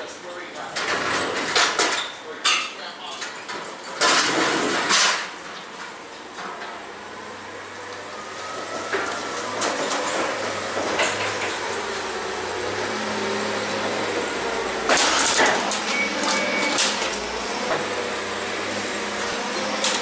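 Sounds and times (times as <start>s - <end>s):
metal clanking and rattling: 0.6s - 6.7s, 14.9s - 17.2s.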